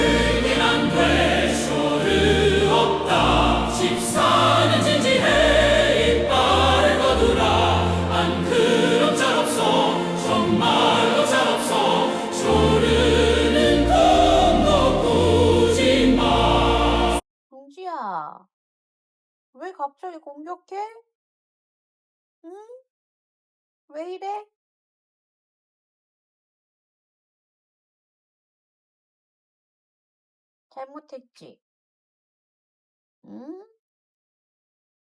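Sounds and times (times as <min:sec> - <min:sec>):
choral operatic singing: 0:00.0 - 0:17.2.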